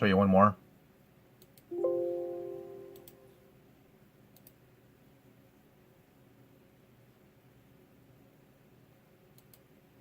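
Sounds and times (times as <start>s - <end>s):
computer alert chime: 1.7s - 3.4s
mouse clicks: 2.9s - 3.3s, 4.3s - 4.6s, 9.3s - 9.7s.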